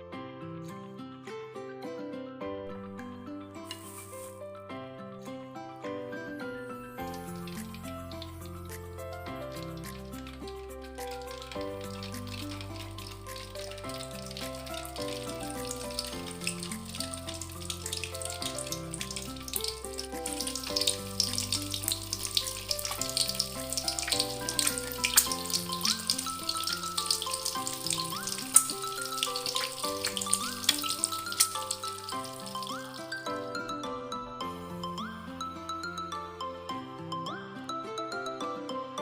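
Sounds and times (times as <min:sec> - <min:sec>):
background music: 0:00.0 - 0:39.0
food sizzling in oil: 0:03.7 - 0:04.4, 0:07.0 - 0:33.3.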